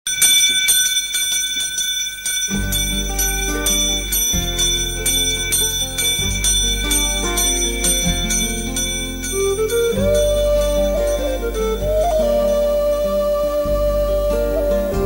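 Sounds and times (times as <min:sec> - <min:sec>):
bell-like chiming figure: 0:00.1 - 0:11.9
low sustained chords: 0:02.5 - 0:15.0.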